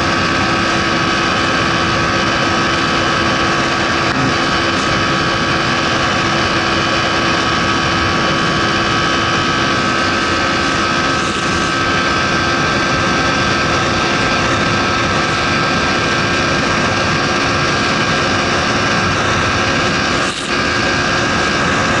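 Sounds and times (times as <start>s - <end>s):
motorcycle engine at full throttle: 0.0s - 22.0s.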